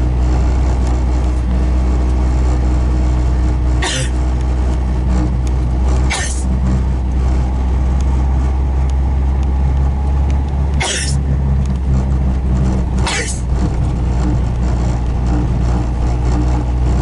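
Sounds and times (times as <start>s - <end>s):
car cabin rumble: 0.0s - 17.0s
person sneezing: 3.8s - 4.2s, 6.1s - 6.4s, 10.8s - 11.2s, 13.0s - 13.4s.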